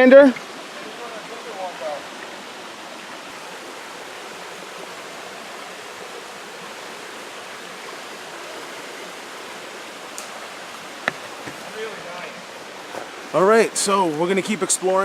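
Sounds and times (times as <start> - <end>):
running water rushing: 0.0 - 15.0.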